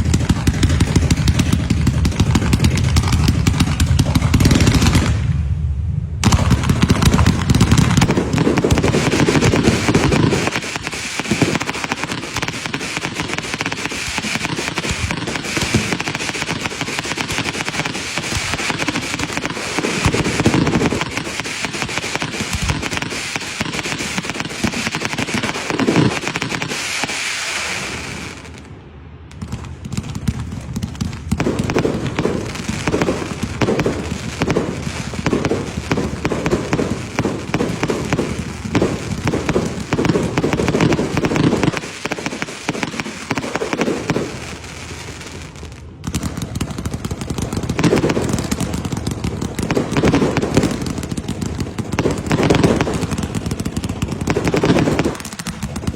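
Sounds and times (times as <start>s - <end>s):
fireworks and firecrackers popping: 0.0s - 5.6s, 6.2s - 55.9s.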